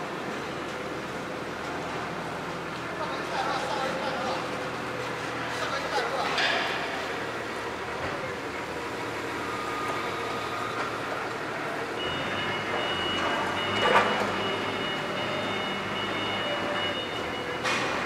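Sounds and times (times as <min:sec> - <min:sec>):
railway vehicle moving slowly: 0:00.0 - 0:18.0.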